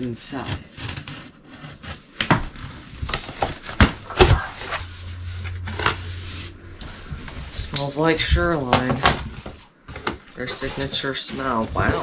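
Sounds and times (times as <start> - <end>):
low steady hum: 0.0 - 12.0
cardboard rustling: 2.0 - 6.5, 8.6 - 12.0.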